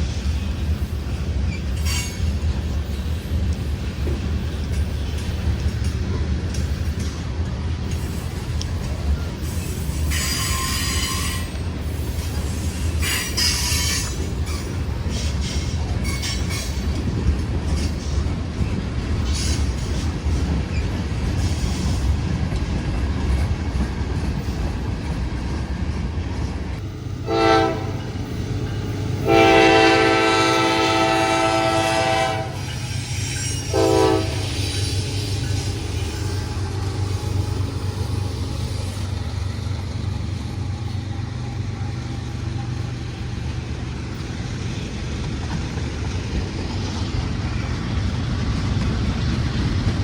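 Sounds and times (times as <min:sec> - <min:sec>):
train rumbling past: 0:00.0 - 0:50.0
wheel squeals: 0:08.0 - 0:17.0
locomotive horn blasts: 0:27.1 - 0:28.2, 0:29.2 - 0:32.8, 0:33.6 - 0:34.6.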